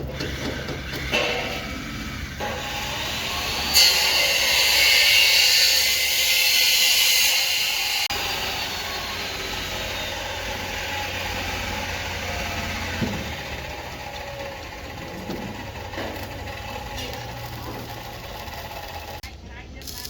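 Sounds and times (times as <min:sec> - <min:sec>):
excavator engine running: 0:08.2 - 0:20.0.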